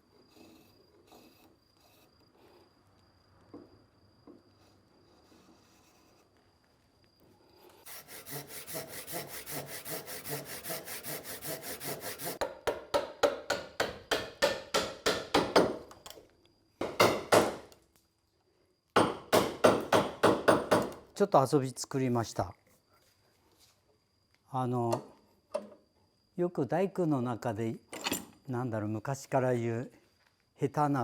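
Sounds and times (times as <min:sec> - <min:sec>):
hand saw cutting wood: 0:07.8 - 0:12.4.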